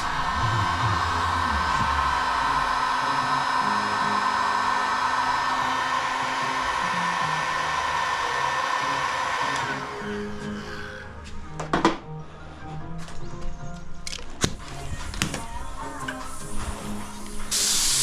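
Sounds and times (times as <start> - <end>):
spray gun air hiss: 14.6 - 18.0.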